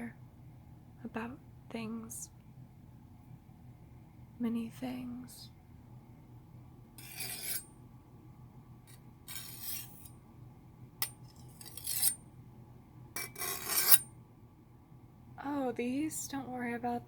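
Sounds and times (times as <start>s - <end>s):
knife sharpening metal on metal: 7.0s - 7.6s, 9.3s - 10.1s, 11.0s - 12.2s, 13.2s - 14.0s.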